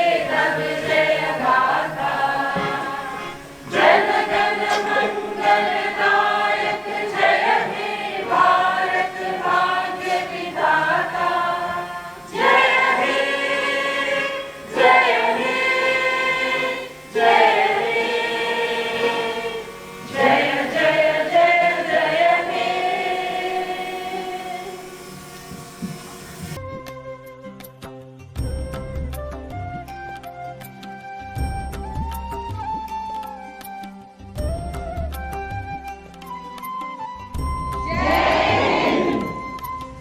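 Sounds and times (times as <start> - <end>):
choir singing: 0.0 - 26.6, 37.9 - 39.6.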